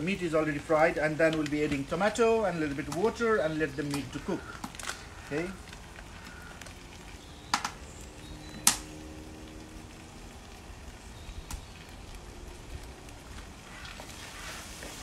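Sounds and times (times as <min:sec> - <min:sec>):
meat sizzling in a pot: 0:04.2 - 0:15.0.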